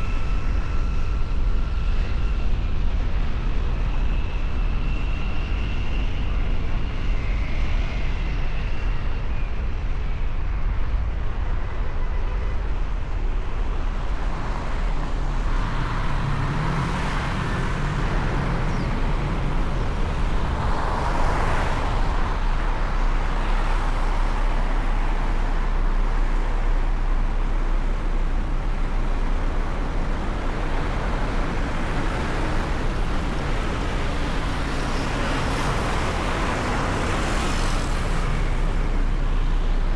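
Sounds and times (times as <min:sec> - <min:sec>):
road traffic rumble: 0:10.6 - 0:39.9.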